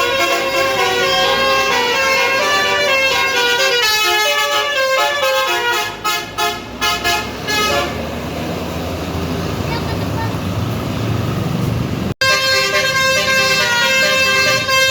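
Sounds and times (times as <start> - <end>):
bus air horns playing melody: 0.0 - 8.1, 12.2 - 14.9.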